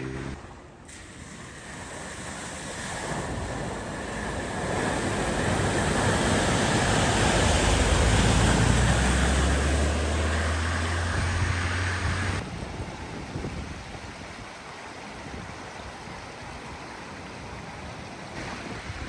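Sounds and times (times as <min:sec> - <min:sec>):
low engine hum: 0:00.0 - 0:00.8, 0:03.0 - 0:14.3
water rushing around vehicle: 0:00.0 - 0:19.0.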